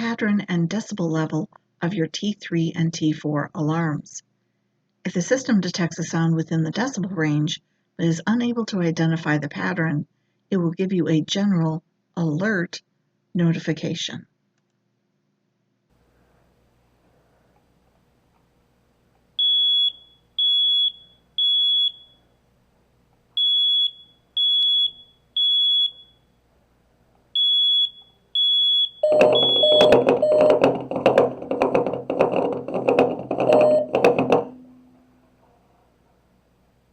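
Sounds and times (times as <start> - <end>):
smoke alarm beeping: 19.4 - 22.3, 23.4 - 26.3, 27.4 - 31.5, 32.9 - 34.9.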